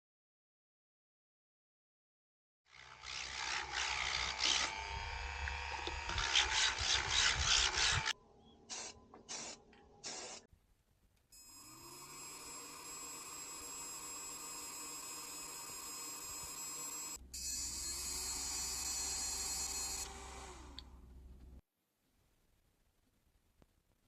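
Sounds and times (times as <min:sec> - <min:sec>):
hand file rasping: 0:05.8 - 0:08.2.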